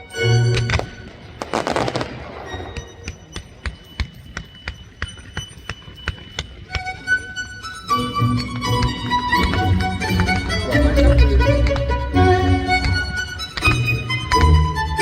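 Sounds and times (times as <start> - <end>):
music: 0.0 - 15.0
fireworks crackling and popping: 0.6 - 6.4
fireworks booming: 0.7 - 4.7.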